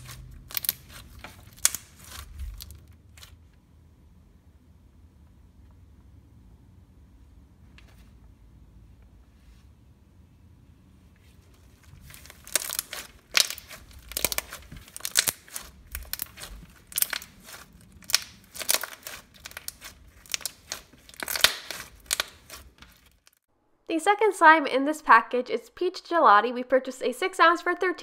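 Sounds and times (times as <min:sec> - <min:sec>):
slime squeezed by hand crackling: 0:00.0 - 0:03.4, 0:11.7 - 0:23.4.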